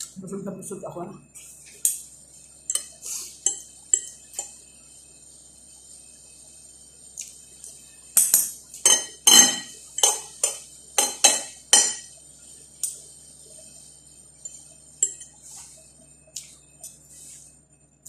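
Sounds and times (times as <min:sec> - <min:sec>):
cutlery clinking against plate: 0:08.2 - 0:12.1.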